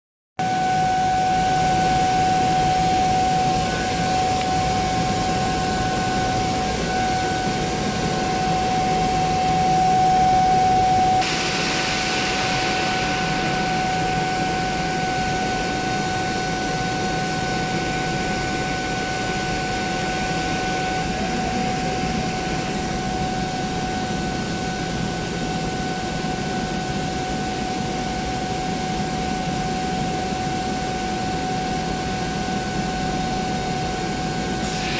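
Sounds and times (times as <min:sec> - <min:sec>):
air compressor droning: 0:00.4 - 0:34.9
high whine: 0:00.4 - 0:34.9
air hissing: 0:02.0 - 0:16.5, 0:34.6 - 0:34.9.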